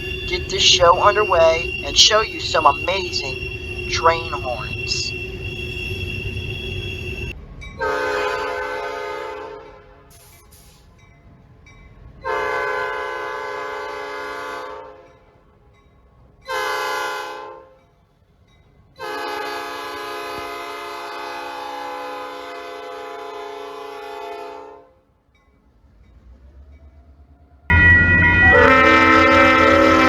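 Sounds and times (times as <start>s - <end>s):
locomotive horn blasts: 0.0s - 10.2s, 19.0s - 24.9s, 27.7s - 30.0s.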